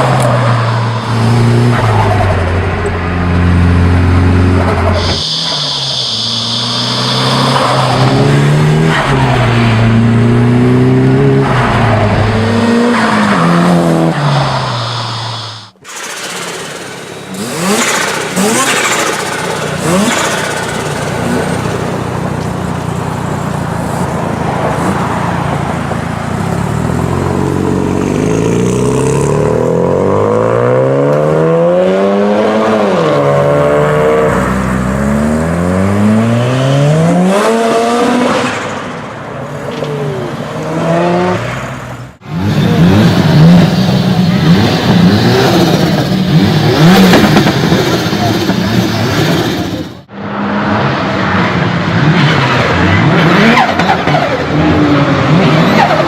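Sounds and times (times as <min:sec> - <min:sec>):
car engine revving hard: 0:00.0 - 0:21.4, 0:42.2 - 0:49.0.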